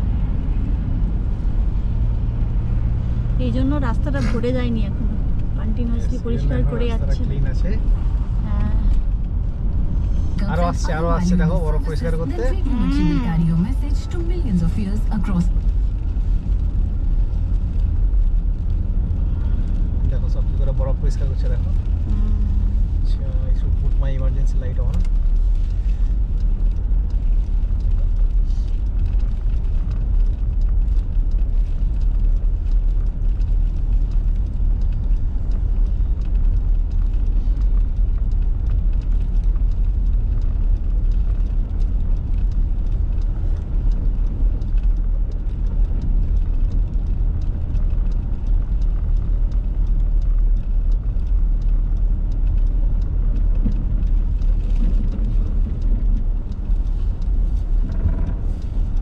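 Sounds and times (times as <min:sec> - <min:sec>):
car engine rumble: 0:00.0 - 0:59.0
tyres on snowy road: 0:00.0 - 0:59.0.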